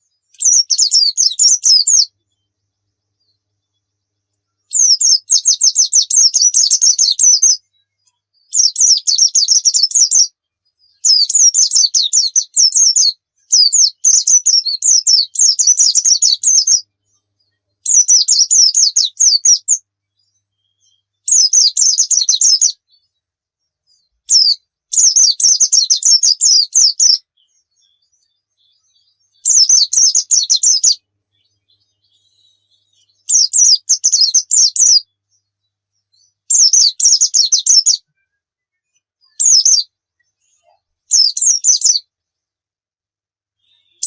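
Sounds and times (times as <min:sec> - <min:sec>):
bird twittering: 0:00.3 - 0:02.1, 0:04.7 - 0:07.6, 0:08.5 - 0:10.3, 0:11.0 - 0:16.8, 0:17.8 - 0:19.8, 0:20.6 - 0:22.8, 0:24.3 - 0:35.1, 0:36.2 - 0:38.0, 0:39.3 - 0:42.0.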